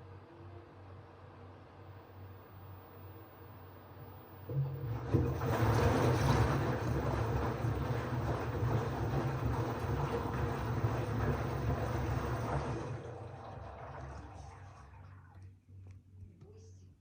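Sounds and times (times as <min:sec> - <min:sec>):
washing machine rumbling: 0:04.0 - 0:15.4.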